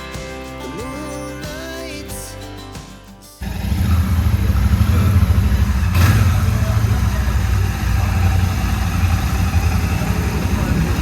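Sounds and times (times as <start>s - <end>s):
motorcycle engine idling: 3.4s - 11.0s.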